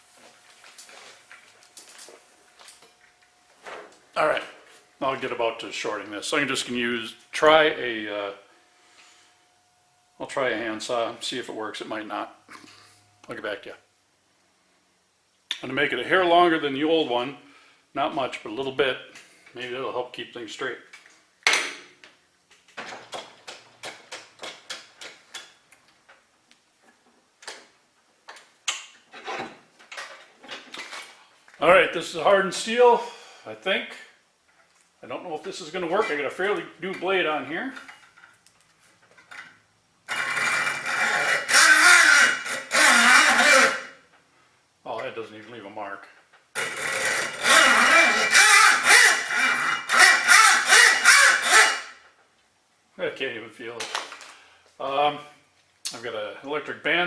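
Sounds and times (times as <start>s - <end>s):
handsaw scraping on steel: 40.1s - 44.0s, 46.6s - 52.0s.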